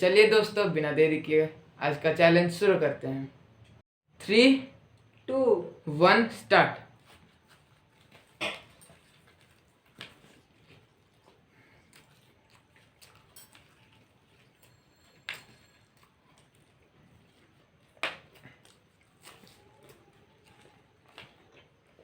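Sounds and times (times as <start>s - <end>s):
crunching fried snacks: 7.0s - 22.0s.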